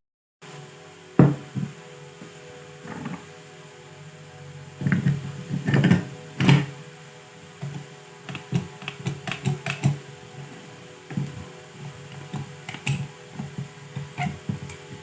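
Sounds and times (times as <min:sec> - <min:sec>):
steady hum: 0:00.4 - 0:15.0
tools and metal parts clicking: 0:04.9 - 0:06.7, 0:08.3 - 0:10.0, 0:12.1 - 0:13.1, 0:14.2 - 0:15.0.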